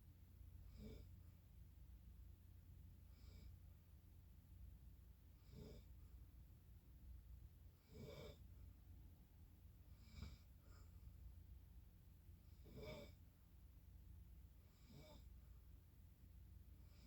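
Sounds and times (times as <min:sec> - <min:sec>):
low steady hum: 0:00.0 - 0:17.0
faint snoring: 0:00.6 - 0:01.3, 0:03.1 - 0:03.7, 0:05.3 - 0:06.1, 0:07.8 - 0:08.5, 0:09.9 - 0:11.0, 0:12.4 - 0:13.2, 0:14.6 - 0:15.4, 0:16.8 - 0:17.0.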